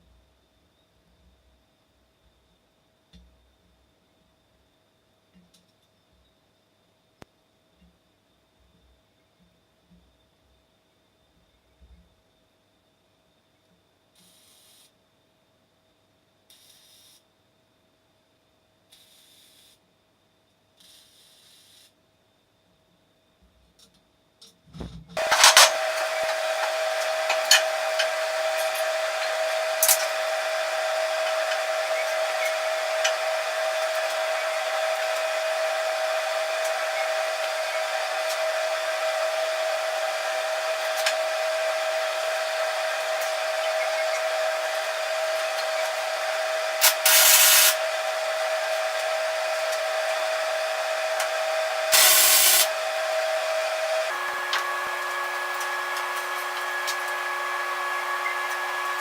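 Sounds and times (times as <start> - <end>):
electric grinder grinding steel: 25.2 - 59.0.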